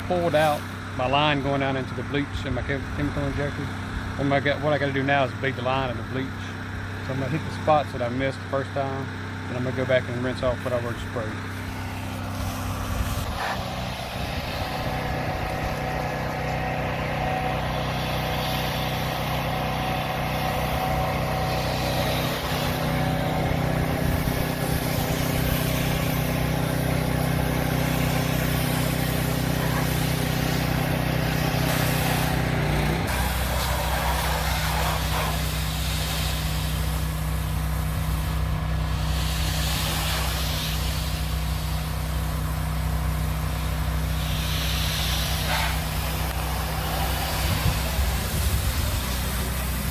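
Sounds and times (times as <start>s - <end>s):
pressure washer engine running: 0.0s - 49.9s
water spraying from wand: 11.5s - 49.9s.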